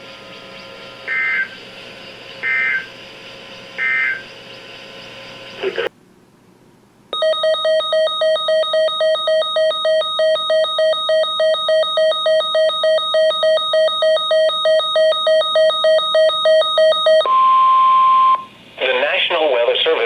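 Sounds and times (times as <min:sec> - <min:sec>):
rapid electronic alert beeping: 0:00.4 - 0:05.9, 0:07.2 - 0:17.4.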